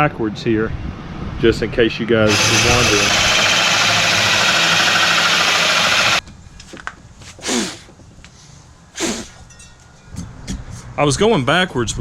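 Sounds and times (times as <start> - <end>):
power drill grinding into wood: 2.3 - 6.2.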